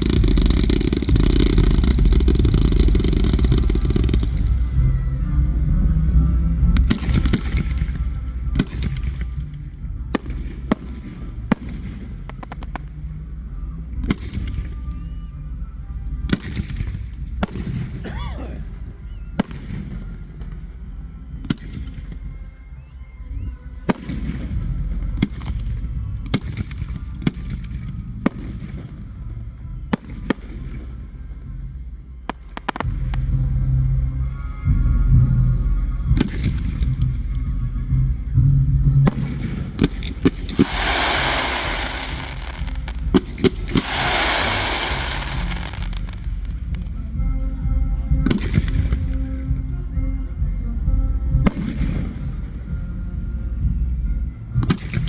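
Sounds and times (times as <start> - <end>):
fireworks sharp bangs: 0.0 - 4.7, 40.3 - 46.8
fireworks crackle: 0.0 - 4.8, 40.3 - 46.9.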